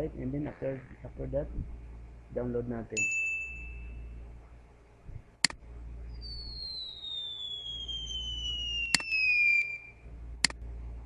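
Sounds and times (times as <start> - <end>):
falling whistle tone: 6.1 - 10.0.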